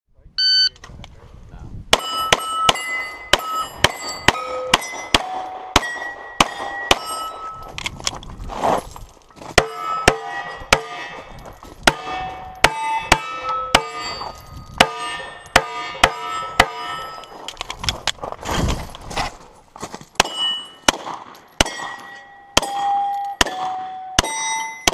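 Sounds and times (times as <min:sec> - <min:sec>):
rapid pistol shots: 0:02.0 - 0:07.2, 0:20.2 - 0:22.0, 0:22.6 - 0:24.9
struck steel plate ringing: 0:02.0 - 0:07.6, 0:09.6 - 0:17.3, 0:20.2 - 0:20.9, 0:21.6 - 0:24.9.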